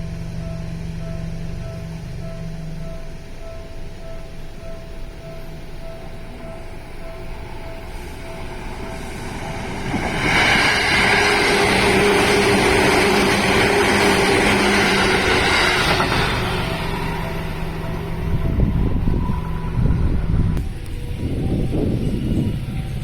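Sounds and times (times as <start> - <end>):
electric train passing: 0.0 - 23.0.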